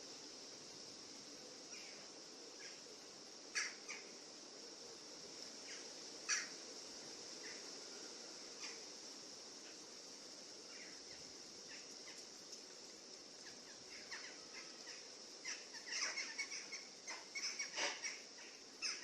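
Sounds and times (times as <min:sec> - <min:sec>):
high-pitched background hiss: 0:00.0 - 0:19.0
birds chirping: 0:13.4 - 0:19.0.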